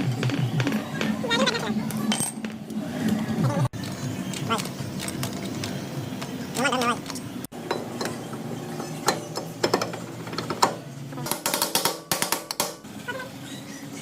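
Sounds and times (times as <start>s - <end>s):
metal tools clicking and ratcheting: 3.8s - 8.2s.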